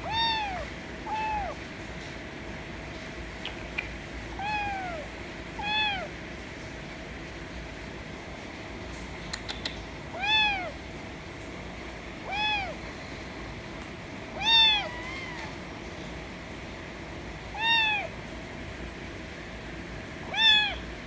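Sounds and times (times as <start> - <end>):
kitten meowing loudly: 0.0 - 1.6, 4.4 - 6.1, 10.2 - 10.8, 12.2 - 12.8, 14.4 - 15.6, 17.5 - 18.1, 20.3 - 20.8.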